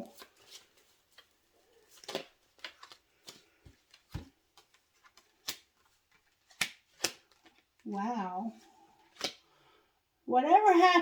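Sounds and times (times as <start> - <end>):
cards being shuffled: 0.0 - 7.8, 9.0 - 9.5.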